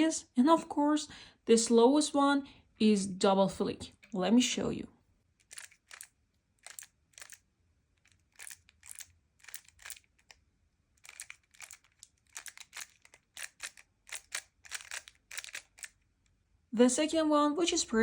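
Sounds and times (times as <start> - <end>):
plastic cube layer clicking: 5.4 - 7.4, 8.1 - 10.4, 11.0 - 16.0.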